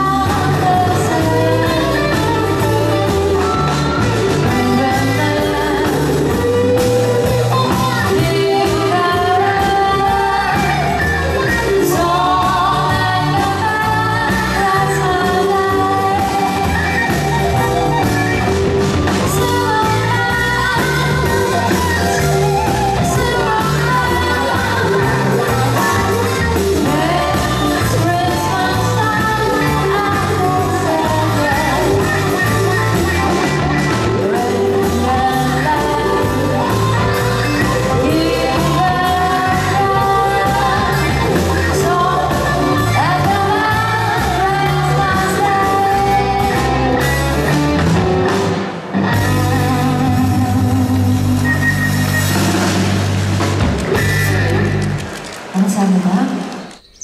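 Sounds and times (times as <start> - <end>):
person singing: 0.0 - 47.9
walking bass line: 0.0 - 55.1
live jazz band playing: 0.0 - 57.0.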